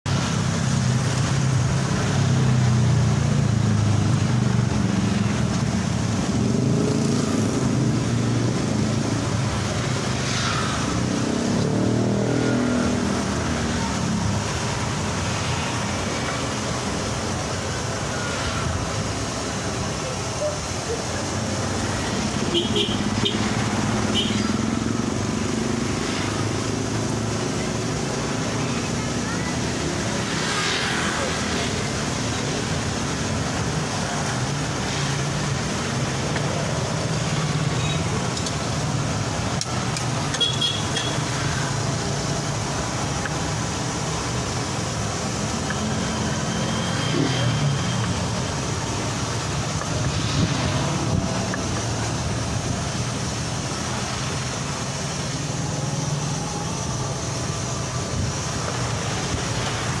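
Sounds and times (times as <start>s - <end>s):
road traffic passing: 0.0s - 60.0s
faint voices: 24.6s - 39.4s.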